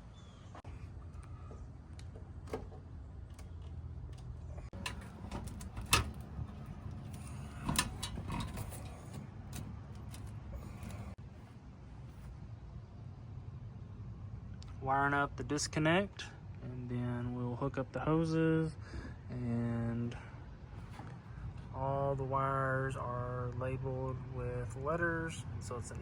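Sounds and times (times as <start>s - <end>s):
sharp clicks and knocks: 2.0s - 11.2s.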